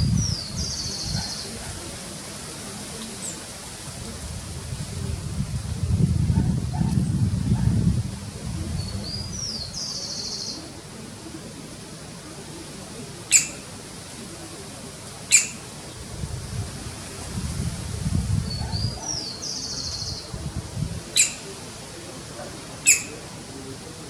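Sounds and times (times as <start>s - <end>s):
woodpecker call notes: 13.3s - 13.7s, 15.2s - 15.7s, 21.1s - 21.6s, 22.8s - 23.2s.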